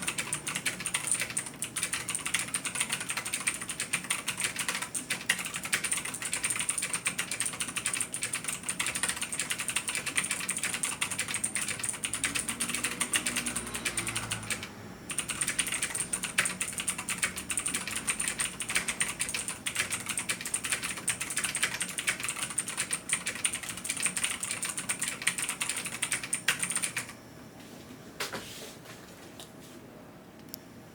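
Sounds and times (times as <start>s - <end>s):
mechanical keyboard typing: 0.0s - 27.2s.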